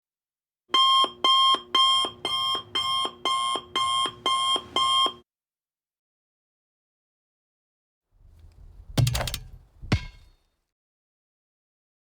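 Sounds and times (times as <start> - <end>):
electronic alarm beeping: 0.7 - 5.2.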